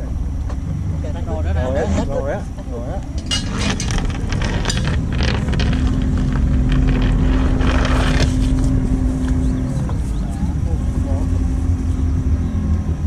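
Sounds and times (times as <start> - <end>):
boat motor rumbling: 0.0 - 13.0
rattles and clicks: 3.0 - 10.0.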